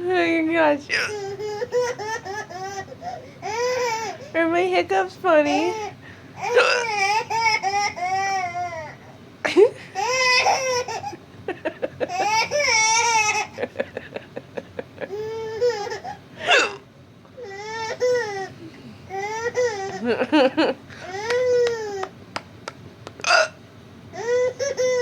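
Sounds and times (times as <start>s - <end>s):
baby laughing and squealing: 1.0s - 4.2s, 10.0s - 11.2s, 12.1s - 13.6s, 15.1s - 16.2s, 24.2s - 25.0s
woman hiccuping: 6.6s - 6.9s, 16.4s - 16.9s, 23.2s - 23.6s.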